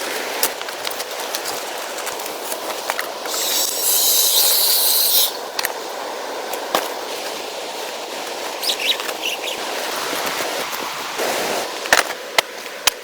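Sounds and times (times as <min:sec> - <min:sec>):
steady outdoor noise: 0:00.0 - 0:13.0
loud high hiss: 0:03.1 - 0:11.8.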